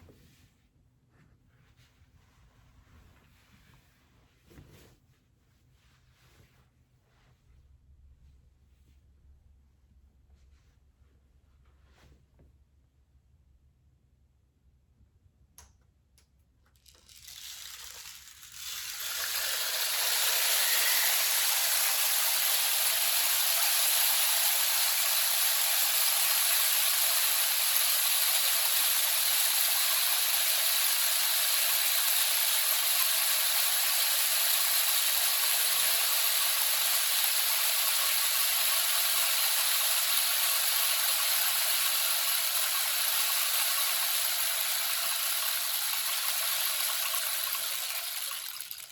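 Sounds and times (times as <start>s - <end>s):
rainstick pellets rattling: 16.8s - 48.9s.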